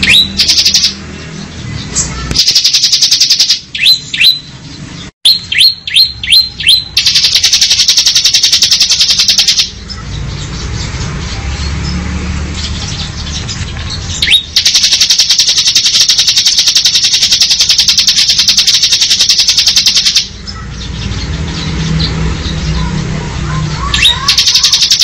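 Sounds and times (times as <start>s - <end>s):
bird fast high trill: 0.0s - 1.0s, 1.9s - 4.5s, 5.2s - 10.2s, 14.1s - 20.6s, 23.5s - 25.0s.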